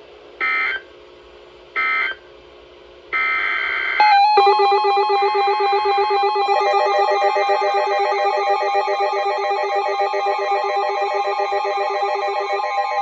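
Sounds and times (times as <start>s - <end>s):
electronic alert tones: 4.0s - 13.0s.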